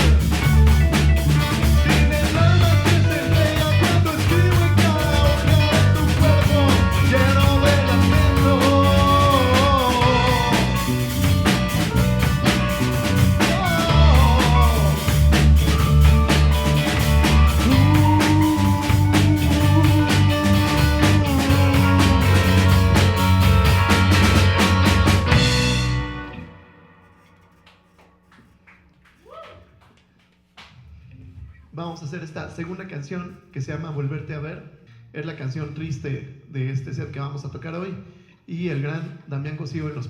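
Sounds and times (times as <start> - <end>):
rock band playing: 0.0 - 27.1.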